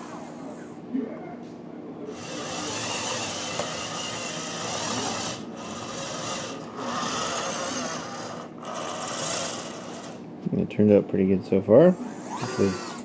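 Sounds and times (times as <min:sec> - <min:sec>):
electric motors whirring: 0:02.1 - 0:10.2, 0:12.0 - 0:13.0.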